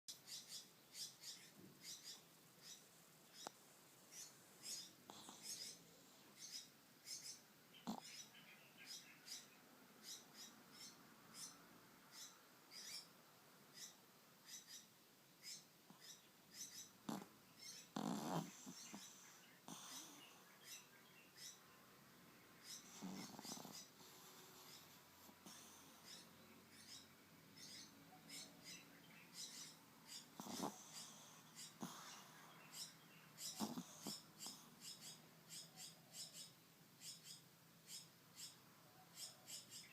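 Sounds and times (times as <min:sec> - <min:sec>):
pet snoring with whistling squeaks: 0:04.1 - 0:08.3, 0:13.8 - 0:21.6, 0:22.6 - 0:27.0, 0:29.4 - 0:38.6.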